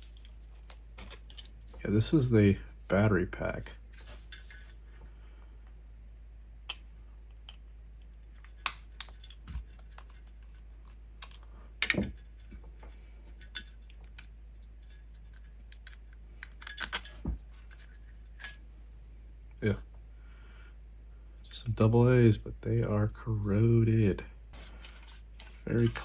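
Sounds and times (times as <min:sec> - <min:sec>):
plastic and metal parts clicking: 0:08.4 - 0:14.3.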